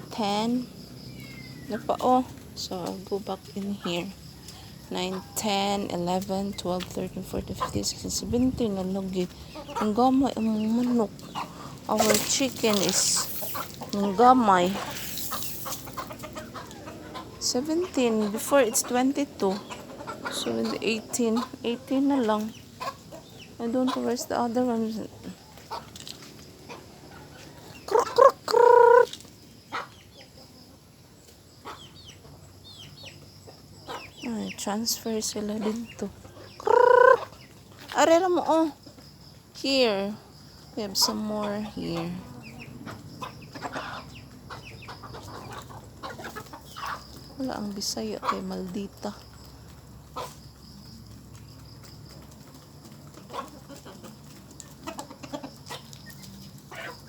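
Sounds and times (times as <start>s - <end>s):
chickens squawking: 0.0s - 30.9s, 31.6s - 34.4s, 35.0s - 39.0s, 40.4s - 57.0s
outdoor background noise: 0.0s - 57.0s.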